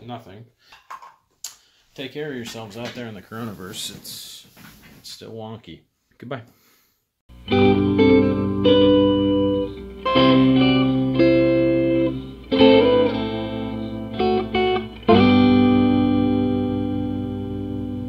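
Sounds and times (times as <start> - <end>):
guitar chords ringing: 7.3 - 18.0.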